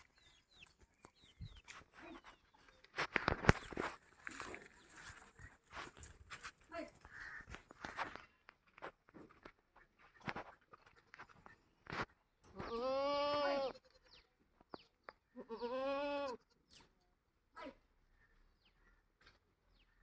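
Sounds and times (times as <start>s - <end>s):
animal bleating: 12.5s - 14.2s, 15.3s - 16.7s.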